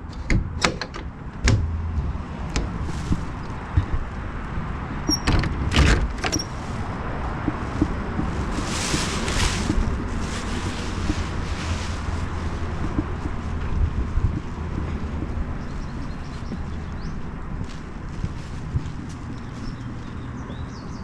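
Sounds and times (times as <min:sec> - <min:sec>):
vehicle engine rumble: 0:00.0 - 0:21.0
sharp knocks: 0:00.3 - 0:04.2.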